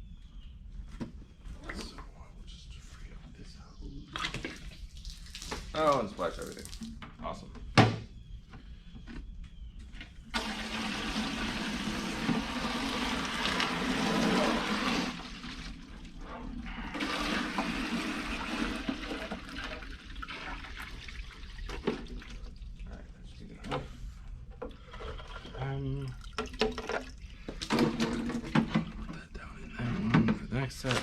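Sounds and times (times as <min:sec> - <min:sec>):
hose water splashing into container: 0:04.1 - 0:07.0, 0:10.3 - 0:23.0, 0:25.0 - 0:28.9.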